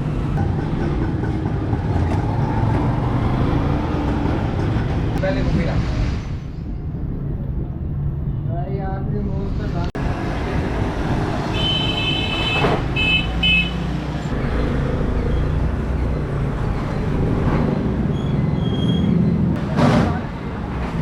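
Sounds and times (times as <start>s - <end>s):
road traffic rumble: 0.0s - 21.0s
high horn toots: 11.5s - 13.8s.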